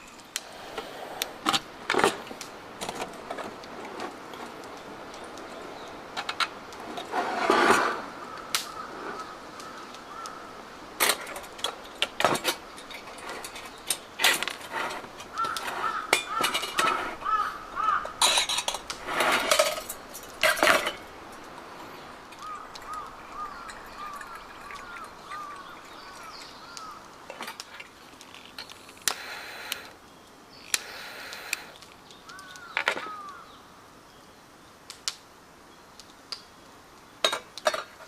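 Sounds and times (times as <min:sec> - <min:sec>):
rustling: 0:06.2 - 0:10.3, 0:11.1 - 0:23.8
cookware clinking and knocking: 0:18.0 - 0:18.8.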